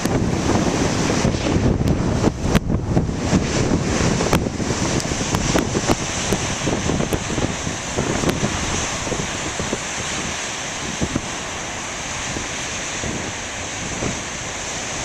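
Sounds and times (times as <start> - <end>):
ocean waves breaking: 0.0 - 15.0
wind buffeting microphone: 0.0 - 15.0.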